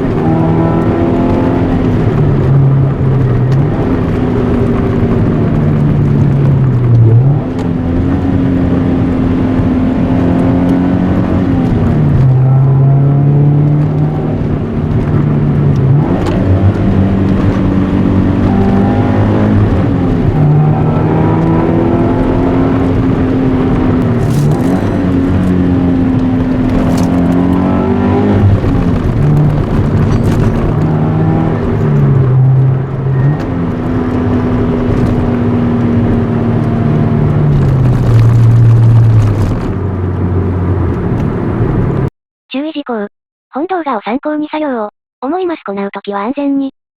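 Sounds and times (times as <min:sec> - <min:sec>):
car engine revving: 0:00.0 - 0:42.1.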